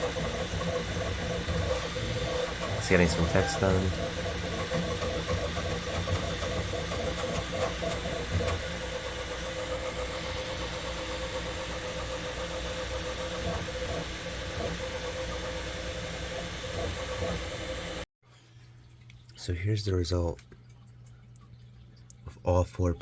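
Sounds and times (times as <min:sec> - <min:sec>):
three d printer motors and fans: 0:00.0 - 0:18.1.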